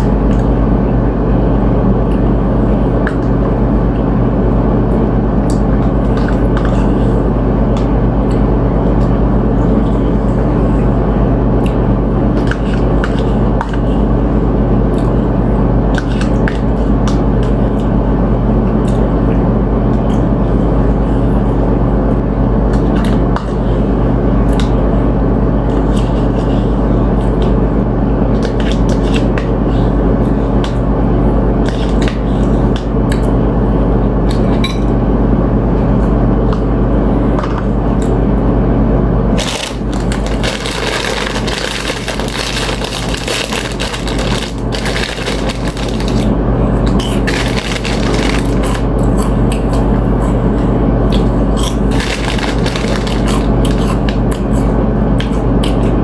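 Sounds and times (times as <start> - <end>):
low hum: 0.0 - 56.0
crunching tortilla chips: 39.4 - 49.4, 51.2 - 54.4.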